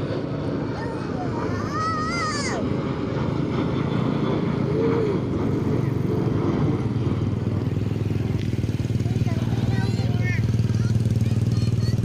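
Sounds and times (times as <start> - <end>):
excavator diesel engine running: 3.8 - 12.0.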